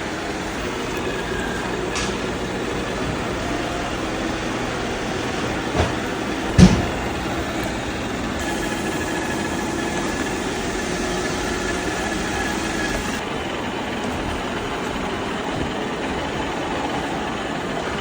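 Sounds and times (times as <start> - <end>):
robot vacuum motor humming: 0.0 - 17.4
loud thump: 5.7 - 7.4.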